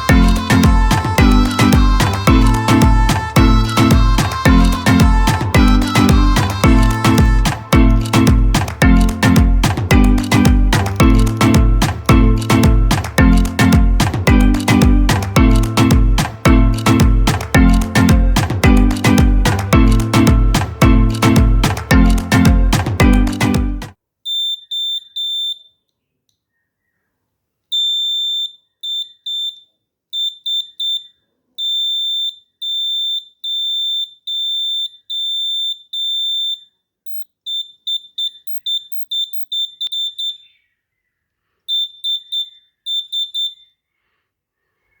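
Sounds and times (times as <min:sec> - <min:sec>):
electronic doorbell buzzer beeping: 0:27.8 - 0:40.5, 0:41.7 - 0:43.8.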